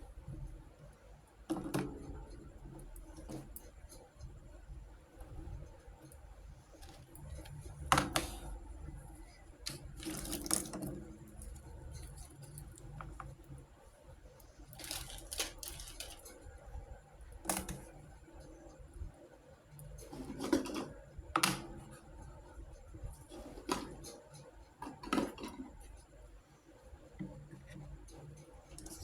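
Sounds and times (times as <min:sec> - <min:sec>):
low steady hum: 0:00.0 - 0:29.0
plastic toys rustling and clattering: 0:05.2 - 0:13.7, 0:14.3 - 0:18.1, 0:19.9 - 0:22.0, 0:23.0 - 0:26.1, 0:27.2 - 0:29.0.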